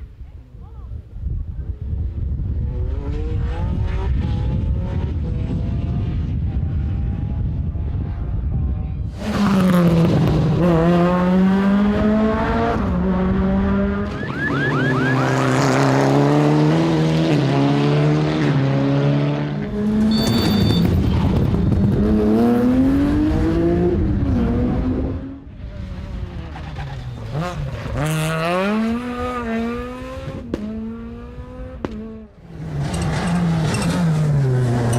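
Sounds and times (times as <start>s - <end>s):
rally car engines revving: 2.1s - 34.9s
high-pitched squeal: 20.0s - 21.2s.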